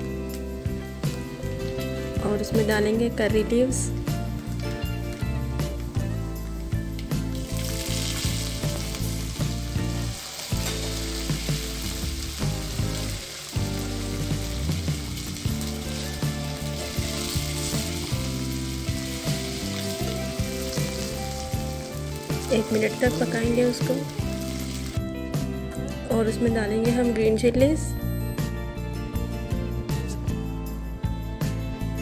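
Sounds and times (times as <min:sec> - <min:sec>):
leaves sizzling in hot oil: 0:00.2 - 0:25.6.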